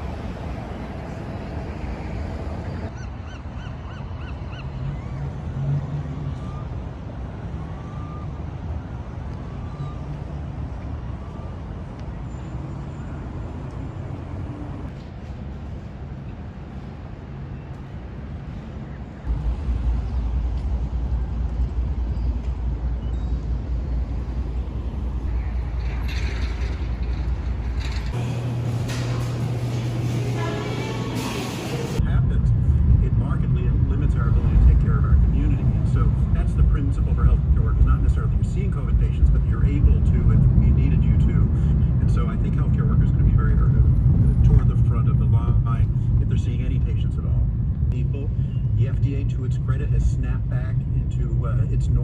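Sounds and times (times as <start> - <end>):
steady low hum: 13.2 - 52.0
low background rumble: 18.1 - 52.0.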